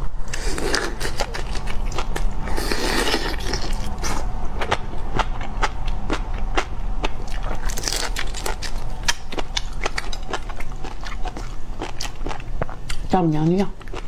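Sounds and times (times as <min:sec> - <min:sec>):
person chewing crisp food: 0:00.2 - 0:14.0.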